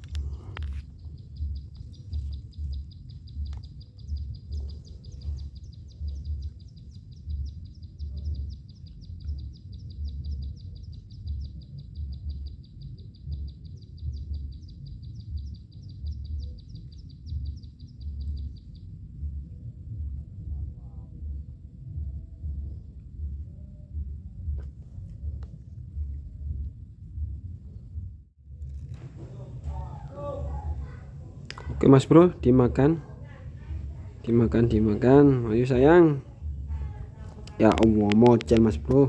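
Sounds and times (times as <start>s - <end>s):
high-pitched chirping trill: 0.0s - 19.0s, 29.2s - 39.0s
low rumble: 0.0s - 39.0s.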